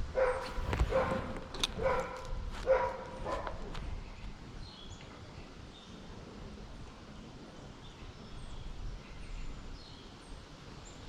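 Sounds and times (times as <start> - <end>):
animal calls: 0.0 - 3.7.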